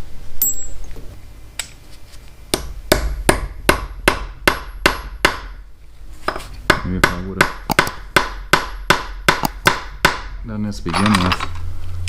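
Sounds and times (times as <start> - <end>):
hammer striking metal: 0.4 - 0.8, 2.5 - 5.6, 6.3 - 10.4.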